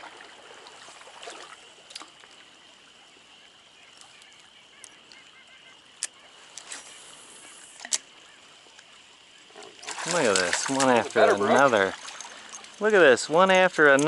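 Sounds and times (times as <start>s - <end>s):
running water hiss: 0.0s - 14.0s
faint bird calls: 2.4s - 10.2s.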